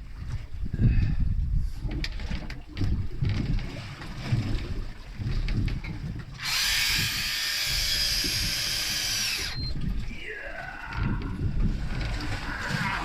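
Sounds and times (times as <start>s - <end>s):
boat rumble: 0.0s - 13.0s
low wind: 0.0s - 13.0s
fishing reel motor whine: 6.4s - 9.8s.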